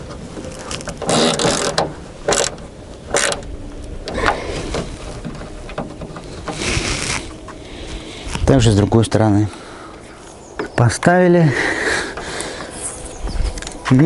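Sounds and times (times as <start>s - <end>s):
hard plastic clicking and scraping: 0.6s - 3.5s.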